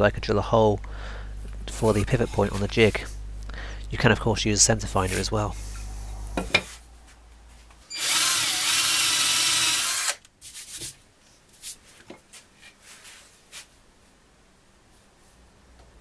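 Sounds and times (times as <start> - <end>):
power drill boring into wood: 7.9 - 10.2.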